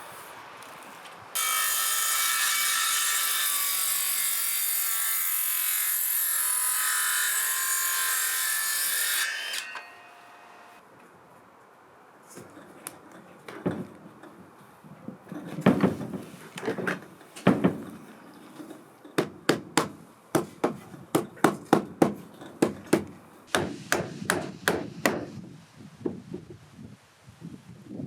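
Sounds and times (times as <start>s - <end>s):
hammer striking nail into wood: 19.2s - 25.4s.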